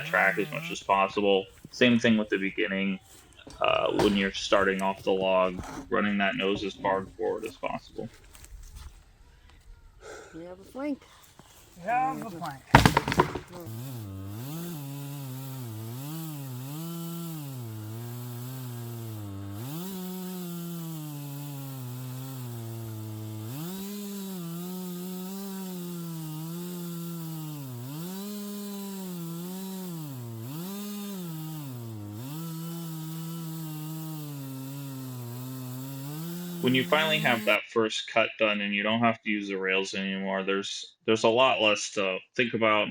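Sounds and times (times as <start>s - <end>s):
chainsaw cutting a log: 0.0s - 2.2s, 3.5s - 7.5s, 11.4s - 37.6s.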